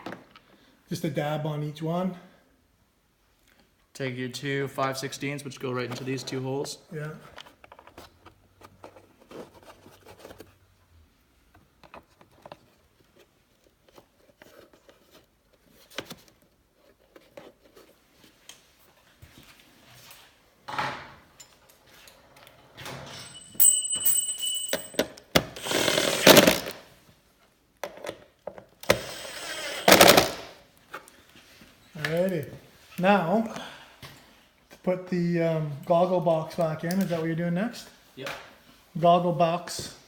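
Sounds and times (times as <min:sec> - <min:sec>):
scraping and rattling: 0:25.6 - 0:26.8.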